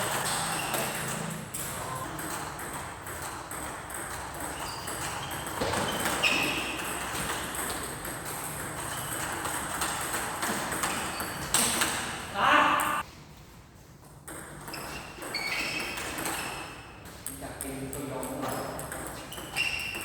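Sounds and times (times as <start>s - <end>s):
short high squeaks: 0.1s - 1.4s, 4.4s - 7.1s, 14.7s - 16.8s, 19.3s - 20.0s.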